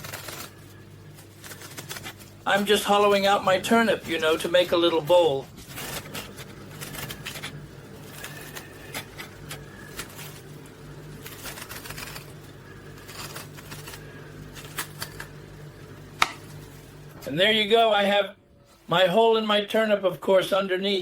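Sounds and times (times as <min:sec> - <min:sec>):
turnip flesh scraping and clicking: 0:00.0 - 0:02.3, 0:05.6 - 0:15.5.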